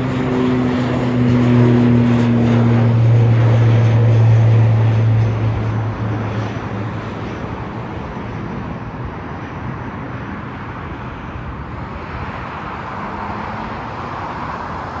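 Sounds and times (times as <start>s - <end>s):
low hum: 0.0s - 7.8s
airliner engine rumble: 0.0s - 15.0s.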